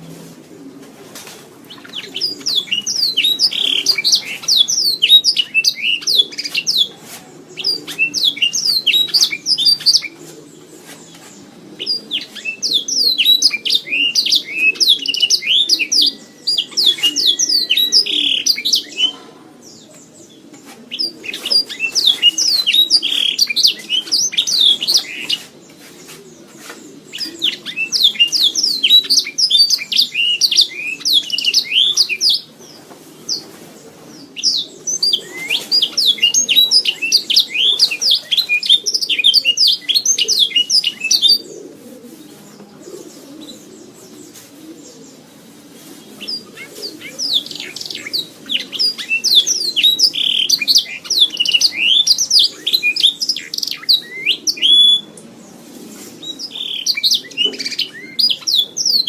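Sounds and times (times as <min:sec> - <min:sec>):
canary singing trilled notes: 0:01.8 - 0:06.9, 0:34.4 - 0:41.4.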